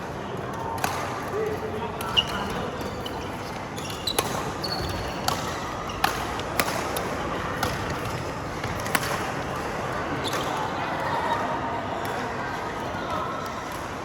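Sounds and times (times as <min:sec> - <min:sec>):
rackets hitting shuttlecock: 0:00.8 - 0:01.4, 0:02.0 - 0:09.6
shoes squeaking on court floor: 0:02.0 - 0:06.3.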